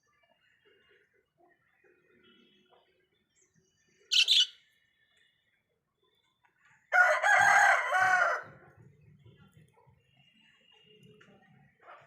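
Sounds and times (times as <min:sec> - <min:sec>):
bird squawk: 0:04.1 - 0:04.6.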